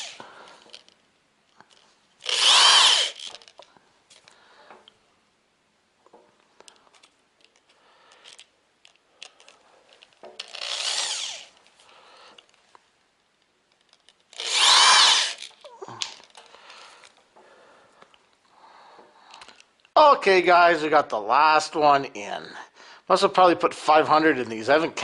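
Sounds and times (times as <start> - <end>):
power drill driving screws: 0.0 - 0.2, 2.2 - 3.4, 10.4 - 11.6, 14.4 - 15.6
faint clicks and handling noises: 0.2 - 2.3, 3.2 - 5.0, 6.0 - 10.6, 11.5 - 14.4, 15.4 - 20.0.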